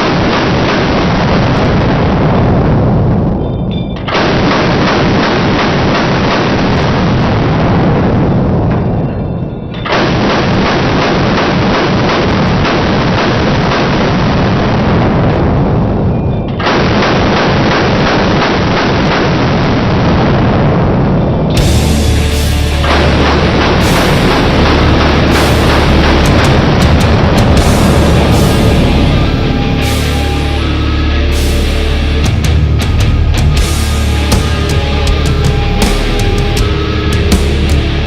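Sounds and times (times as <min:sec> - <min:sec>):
slowed machine gun bursts: 0:21.6 - 0:30.9.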